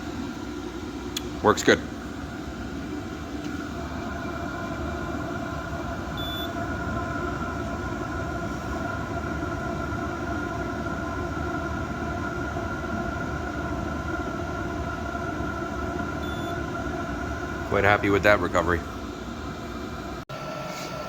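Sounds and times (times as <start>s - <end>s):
air heater running: 0.0s - 21.0s.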